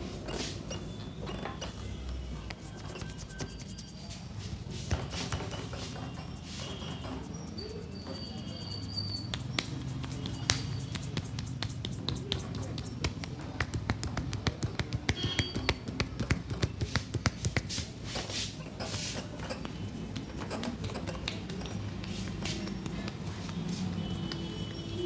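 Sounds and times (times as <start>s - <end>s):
hands slapping on body: 9.1s - 18.0s, 20.1s - 24.8s.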